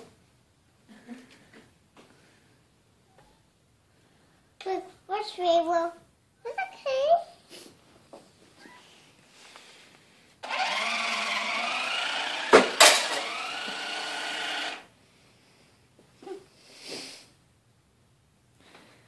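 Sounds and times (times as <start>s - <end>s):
small electric motor whirring: 10.4s - 14.9s.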